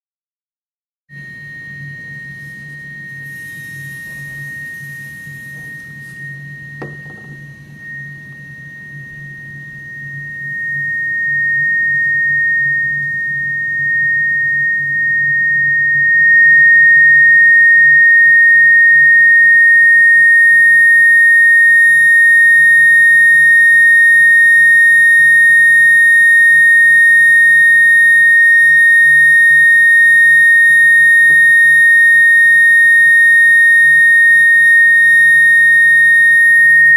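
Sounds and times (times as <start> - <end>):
high-pitched sine tone: 1.1 - 36.9
low steady hum: 1.2 - 18.7.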